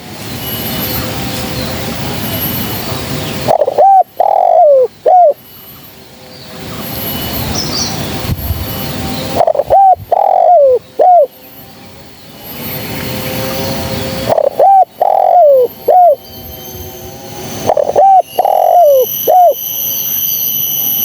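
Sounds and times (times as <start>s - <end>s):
background rushing noise: 0.0s - 21.0s
dove cooing: 3.2s - 5.4s, 9.3s - 11.3s, 14.2s - 16.2s, 17.7s - 19.6s.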